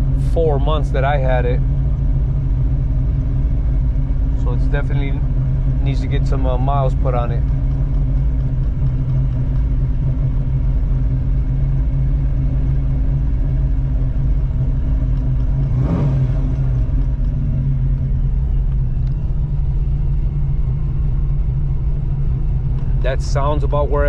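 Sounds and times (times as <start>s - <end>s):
car engine idling: 0.0s - 24.0s.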